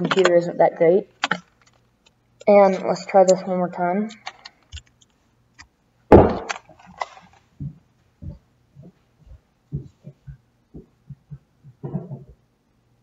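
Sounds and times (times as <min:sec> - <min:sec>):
popper bang: 0:06.1 - 0:06.5.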